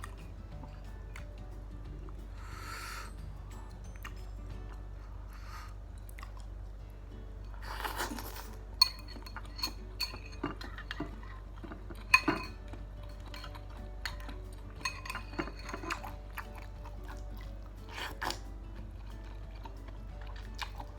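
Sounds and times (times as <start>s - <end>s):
cutlery clinking against a bowl: 7.5s - 20.9s.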